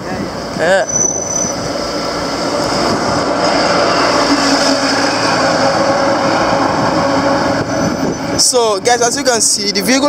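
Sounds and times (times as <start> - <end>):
vehicle driving past: 0.7 - 8.4.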